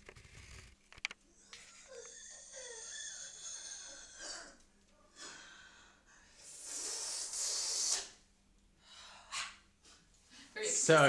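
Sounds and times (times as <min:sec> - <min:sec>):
person making breathy hissing noises: 0:06.3 - 0:08.2
loud sharp vocal hiss: 0:06.4 - 0:08.2.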